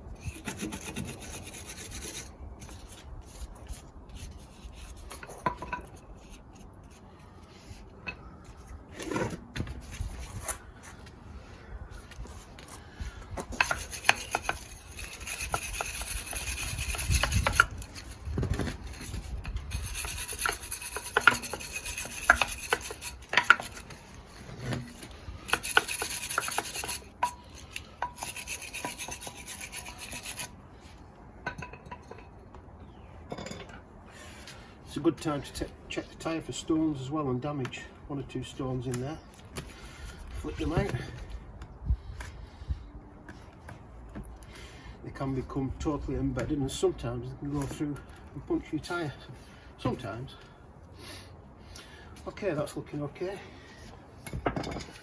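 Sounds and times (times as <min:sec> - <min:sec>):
wire brush scrubbing metal: 0:00.2 - 0:05.2, 0:13.5 - 0:30.6.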